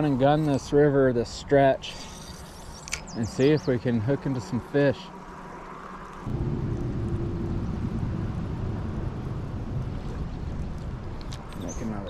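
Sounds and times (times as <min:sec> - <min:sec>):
wind buffeting microphone: 0:06.2 - 0:12.0.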